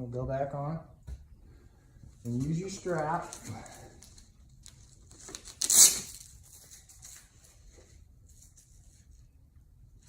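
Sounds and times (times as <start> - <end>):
strap tearing rasp: 5.3 - 6.3.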